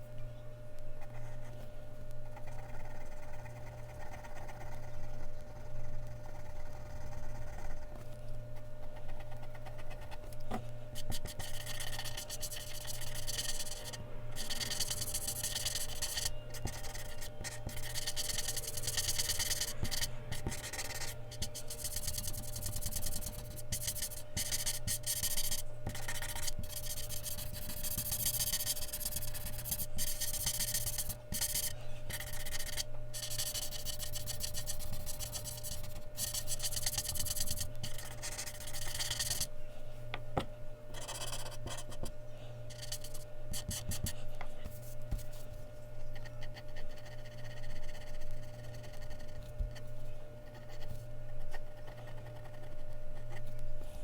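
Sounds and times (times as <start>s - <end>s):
pencil scratching on paper: 1.0s - 39.5s, 40.9s - 42.1s, 42.7s - 53.6s.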